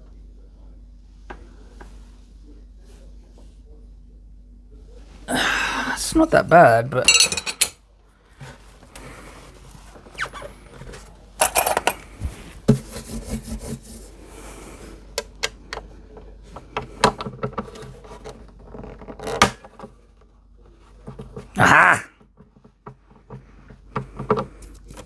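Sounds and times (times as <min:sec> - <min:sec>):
tools clattering: 0:07.0 - 0:07.8, 0:11.4 - 0:12.0.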